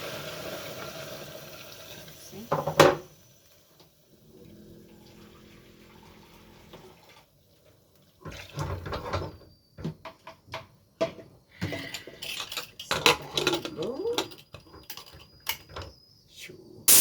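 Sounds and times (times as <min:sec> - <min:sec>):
water pouring into a pot: 0:00.0 - 0:02.5.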